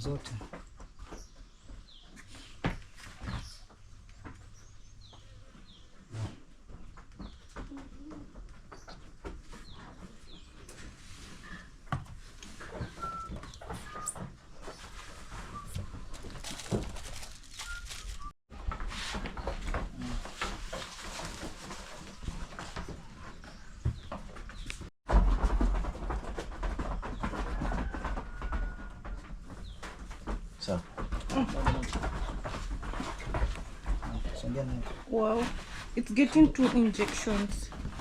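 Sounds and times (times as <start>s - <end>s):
knocks and rustling: 0.0s - 38.0s.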